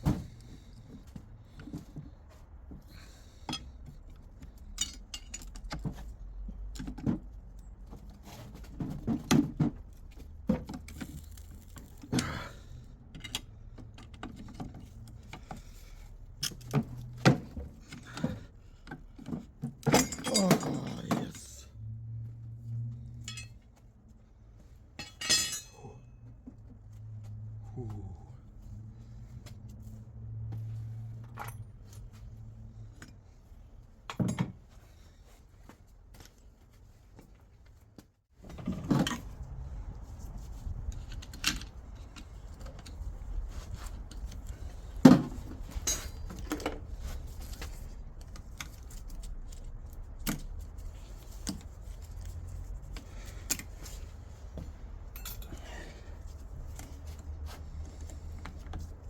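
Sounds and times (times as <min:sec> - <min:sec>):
metal parts and tools clinking: 0:03.4 - 0:06.0, 0:16.4 - 0:18.4, 0:19.2 - 0:21.6, 0:23.1 - 0:23.7, 0:25.0 - 0:26.0, 0:40.9 - 0:59.0.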